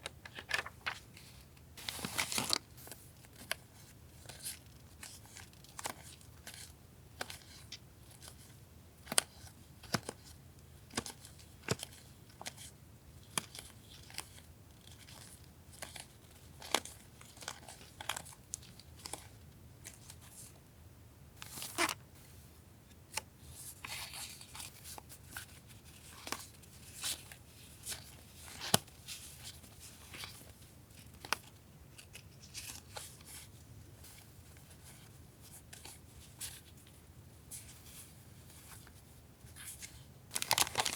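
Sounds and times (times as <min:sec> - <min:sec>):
packaging rustling and crinkling: 0:00.2 - 0:03.0, 0:39.9 - 0:40.9.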